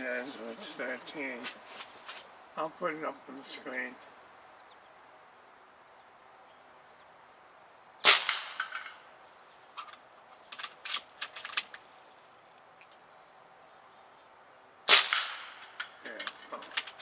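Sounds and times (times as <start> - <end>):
air rifle shot crack: 8.0 - 9.1, 14.9 - 16.0.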